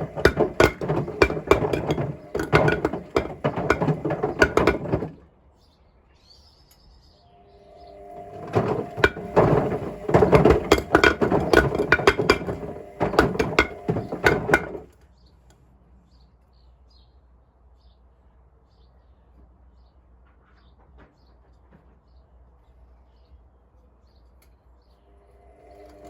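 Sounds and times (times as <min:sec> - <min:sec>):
bricks clattering in washing machine: 0:00.0 - 0:05.2, 0:07.9 - 0:15.0, 0:25.6 - 0:26.0.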